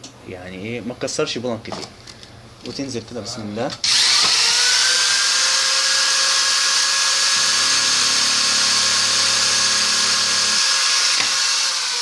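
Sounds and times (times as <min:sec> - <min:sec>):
small electric drill drilling plastic: 0:03.8 - 0:12.0
low hum: 0:07.2 - 0:10.6.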